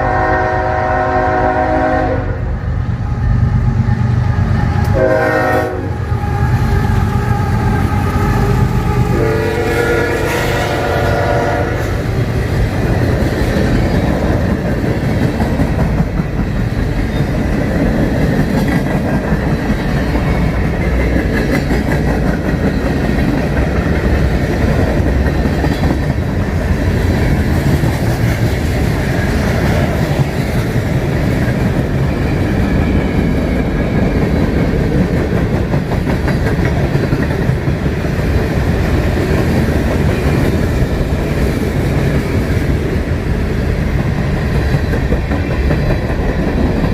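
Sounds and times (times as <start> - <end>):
train rumbling past: 0.0 - 46.9.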